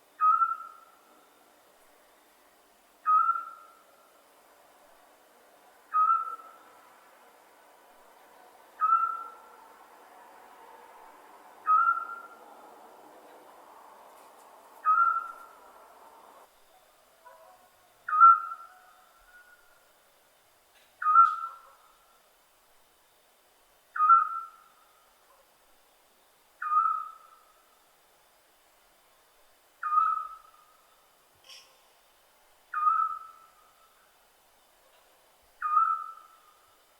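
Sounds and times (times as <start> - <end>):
owl whistled call: 0.2 - 1.0, 3.0 - 3.8, 5.9 - 6.6, 8.8 - 9.5, 11.6 - 12.4, 14.8 - 15.6, 18.0 - 19.7, 21.0 - 21.7, 24.0 - 24.8, 26.6 - 27.6, 29.8 - 30.8, 32.7 - 33.7, 35.6 - 36.6.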